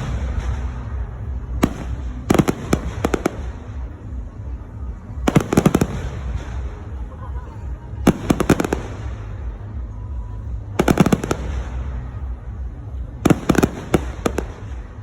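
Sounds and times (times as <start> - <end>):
firework cracks and pops: 0.0 - 4.0, 10.8 - 12.0
low rumble: 0.0 - 15.0.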